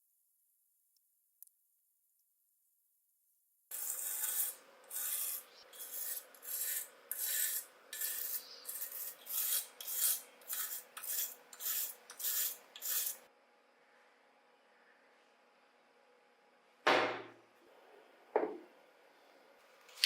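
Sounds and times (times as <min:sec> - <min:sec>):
hand tool rasping: 0:03.7 - 0:13.2.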